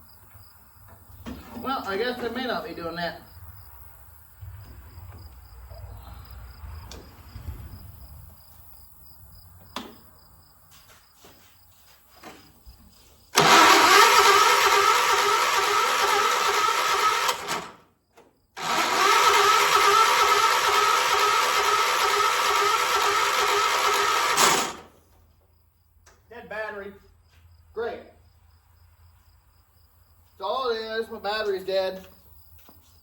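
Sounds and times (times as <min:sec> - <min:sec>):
starter motor whirring: 0:13.4 - 0:17.8, 0:18.6 - 0:24.9.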